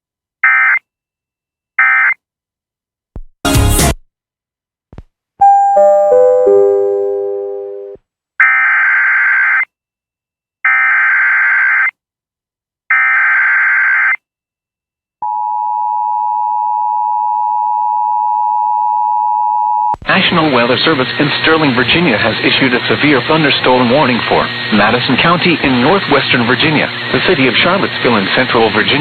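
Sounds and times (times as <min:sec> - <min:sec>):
descending chime: 0:05.4 - 0:08.0
two-tone attention signal: 0:05.4 - 0:08.0.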